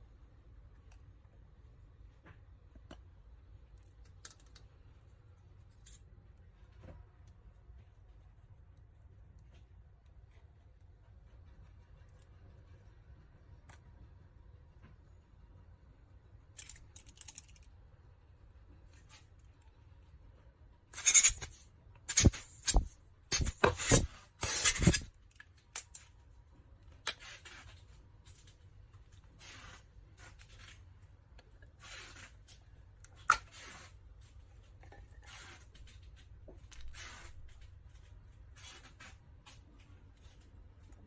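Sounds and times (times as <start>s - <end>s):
plastic parts scraping and clicking: 3.7s - 7.0s, 16.5s - 17.7s.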